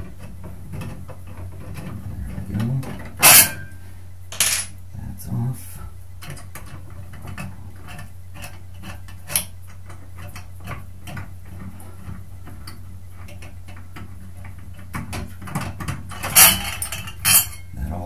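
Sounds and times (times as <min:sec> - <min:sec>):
metal parts clattering: 0:04.3 - 0:04.7, 0:16.1 - 0:17.7.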